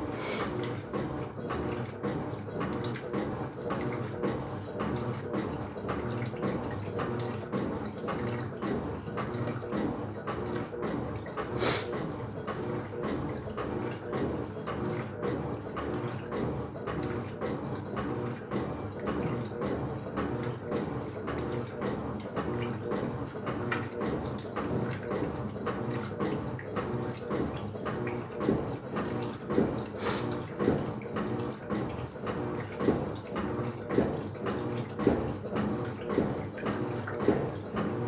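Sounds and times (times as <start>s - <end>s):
washing machine drive running: 0.0s - 38.0s
water churning and splashing: 0.0s - 38.0s.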